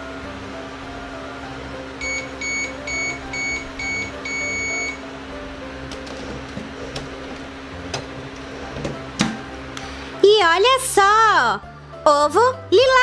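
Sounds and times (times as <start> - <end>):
steady hum: 0.0 - 10.2
toy microwave beeping: 2.0 - 5.0.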